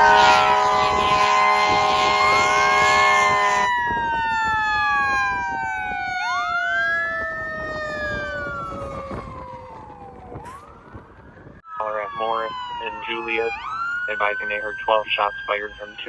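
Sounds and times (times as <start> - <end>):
fire engine air horn: 0.0 - 6.3
emergency sirens: 0.0 - 16.0.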